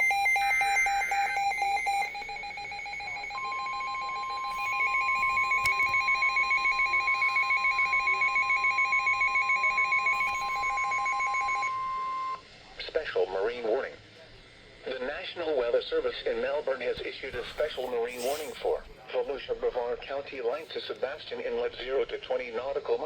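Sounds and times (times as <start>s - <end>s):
fast pulsing electronic beep: 0.0s - 11.7s, 17.5s - 18.8s
steady alarm tone: 0.0s - 12.4s, 17.4s - 18.8s
buzzy data squawk: 4.2s - 5.6s, 17.5s - 18.8s.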